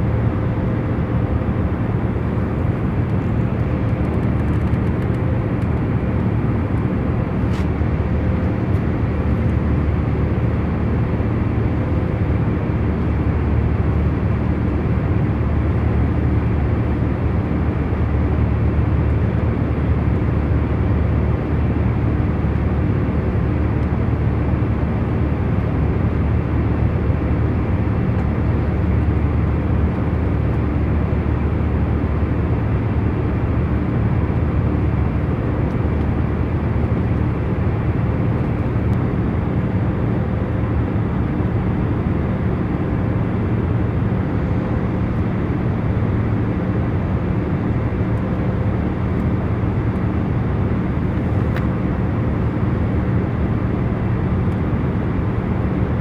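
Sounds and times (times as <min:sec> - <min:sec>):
airliner cabin hum: 0:00.0 - 0:20.4, 0:31.4 - 0:56.0.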